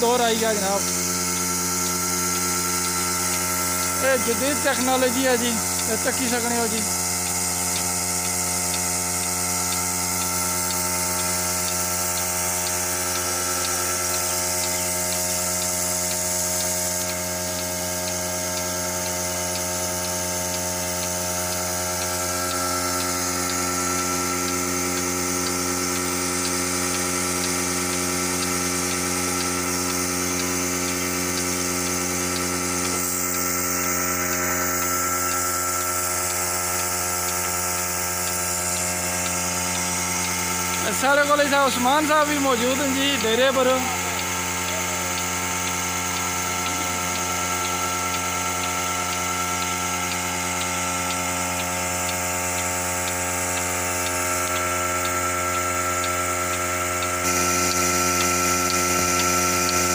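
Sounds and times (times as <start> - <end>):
milking machine vacuum pump hum: 0.0 - 59.9.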